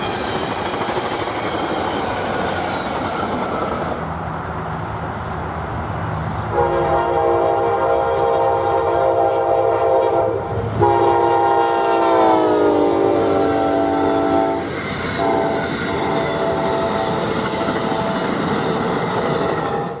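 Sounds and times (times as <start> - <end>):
passing train rumble: 0.0 - 20.0
locomotive air horn blasts: 6.5 - 18.2.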